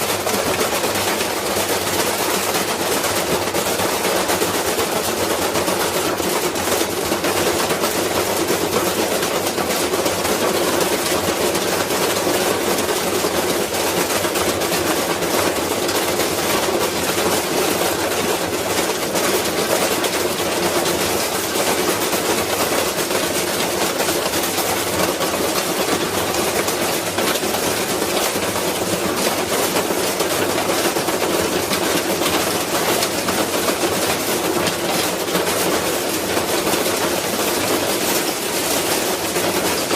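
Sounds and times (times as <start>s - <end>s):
washing machine rattling: 0.0s - 39.9s.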